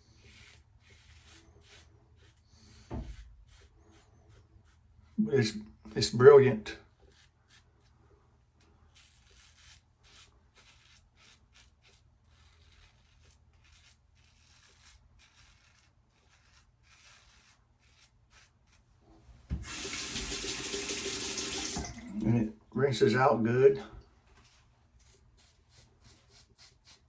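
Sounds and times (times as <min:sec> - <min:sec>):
razor scraping stubble: 0:00.0 - 0:06.1, 0:06.9 - 0:08.0, 0:08.8 - 0:18.9, 0:19.6 - 0:22.0, 0:25.0 - 0:27.0
tap running: 0:19.4 - 0:22.3.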